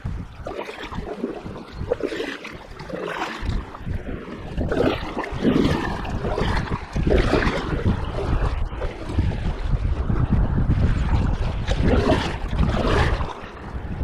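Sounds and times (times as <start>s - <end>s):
river water splashing and rushing: 0.0s - 7.8s
wind rumbling on microphone: 0.0s - 14.0s.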